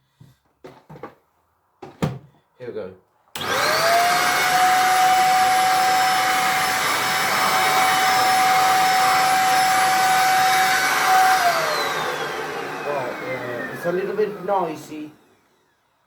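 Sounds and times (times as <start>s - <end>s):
vacuum cleaner motor whine: 3.4s - 16.0s.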